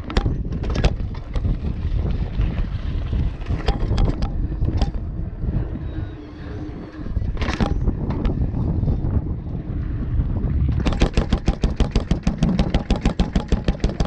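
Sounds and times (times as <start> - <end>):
mountain bike rattling over rough ground: 0.0 - 14.0
wind noise on microphone: 0.0 - 14.0
sharp knocks and clacks: 10.8 - 14.0.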